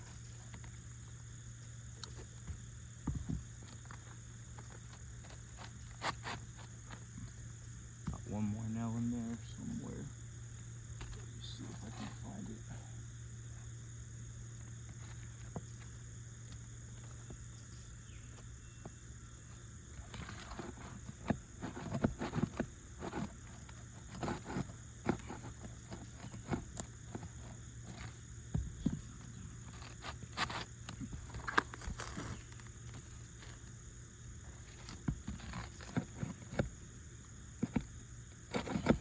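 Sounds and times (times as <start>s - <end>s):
shingle tool scraping and clicking: 20.0s - 39.0s.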